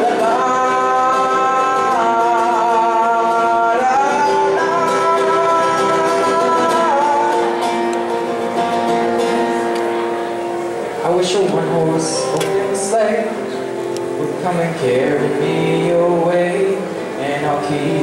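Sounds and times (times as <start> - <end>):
person singing wordlessly: 0.0 - 7.9, 14.2 - 18.0
acoustic guitar: 0.0 - 18.0.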